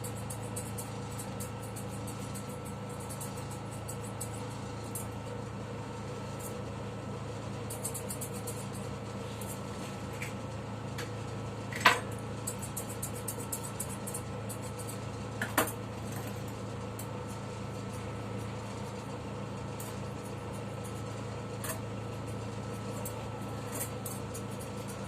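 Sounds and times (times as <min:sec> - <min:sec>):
blade ticking through fur: 0:00.0 - 0:05.3, 0:07.6 - 0:09.8, 0:12.4 - 0:15.2, 0:19.7 - 0:25.0.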